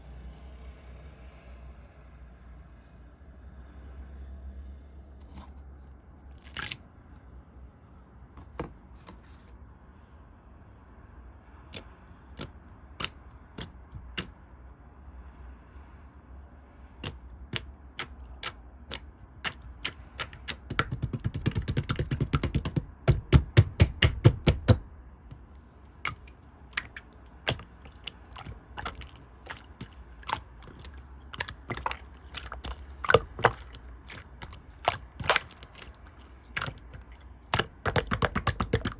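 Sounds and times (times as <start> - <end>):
slime clicking and popping: 11.7 - 14.3, 17.0 - 24.8, 26.0 - 38.9.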